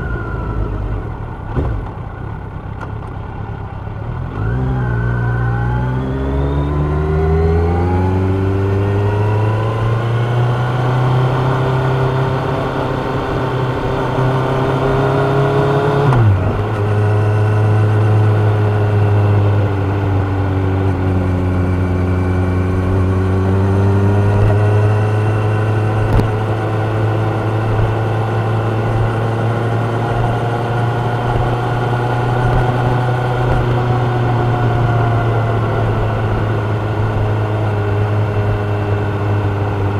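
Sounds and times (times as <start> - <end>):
motorcycle engine revving: 4.0 - 39.9.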